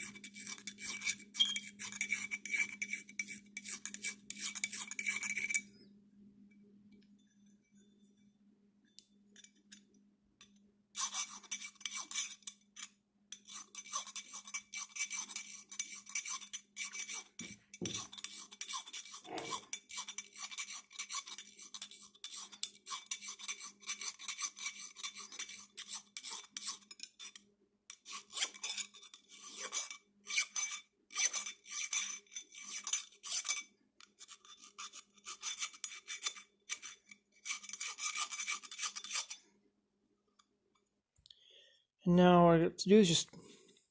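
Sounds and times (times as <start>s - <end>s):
hand file scraping steel: 0.0s - 5.6s, 10.9s - 39.4s.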